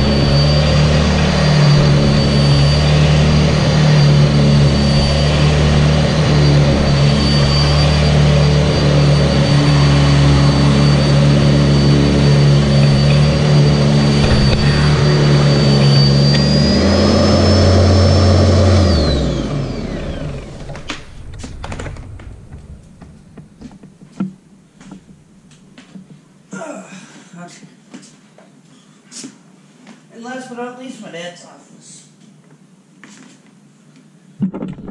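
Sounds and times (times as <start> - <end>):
motor spinning down: 0.0 - 23.9
vacuum cleaner motor whining: 0.0 - 24.0.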